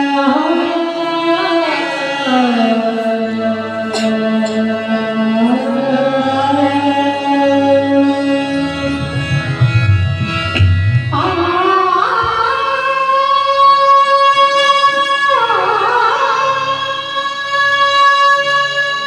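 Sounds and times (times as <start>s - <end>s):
electronic keyboard notes: 7.2s - 13.0s
hand drum beats: 8.8s - 11.6s.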